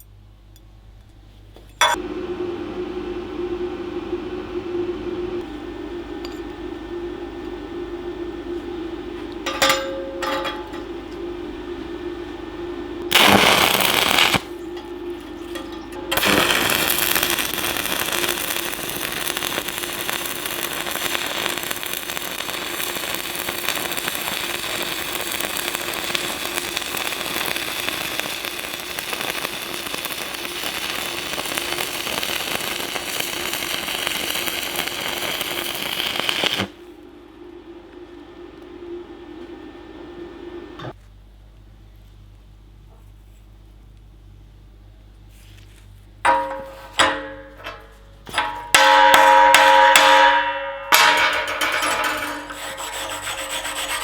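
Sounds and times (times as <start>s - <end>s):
steady hum: 0.0s - 54.0s
welding arc crackling: 13.0s - 37.0s, 48.4s - 54.0s.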